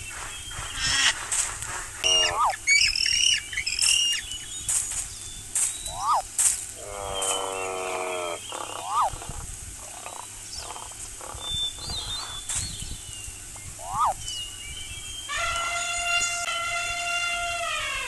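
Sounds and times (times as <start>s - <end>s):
drawn-out animal call: 2.0s - 2.8s, 6.8s - 12.4s
animal chirps: 2.0s - 4.4s, 5.8s - 12.6s, 13.8s - 14.3s.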